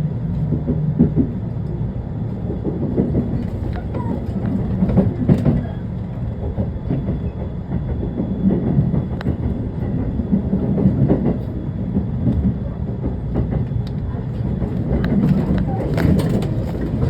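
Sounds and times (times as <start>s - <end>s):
train rumbling on rails: 0.0s - 17.0s
sharp rail clicks: 12.2s - 17.0s.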